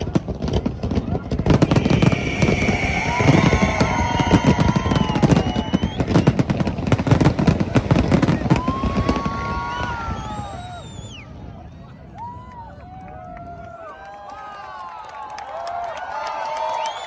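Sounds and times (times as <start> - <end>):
fireworks bangs and crackles: 0.0 - 13.8
fireworks whistling: 0.9 - 12.0.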